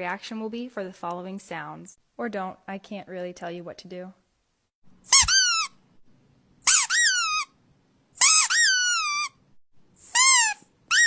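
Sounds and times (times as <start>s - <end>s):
squeaky toy squeaking: 5.1s - 5.8s, 6.6s - 7.5s, 8.2s - 9.4s, 10.0s - 11.0s.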